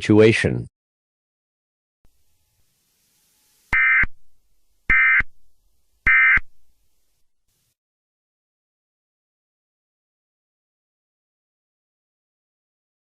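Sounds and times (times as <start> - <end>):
digital data tone bursts: 3.4 - 4.3, 4.9 - 5.3, 6.0 - 6.5.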